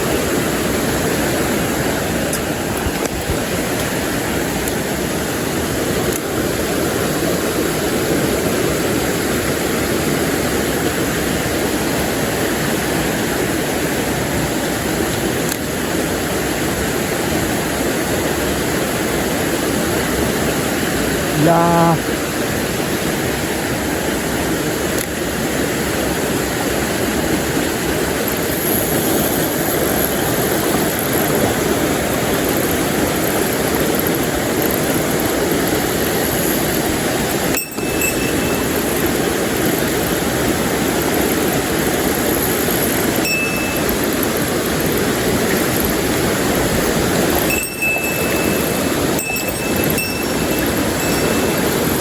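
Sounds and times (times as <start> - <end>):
stream water rushing: 0.0 - 52.0.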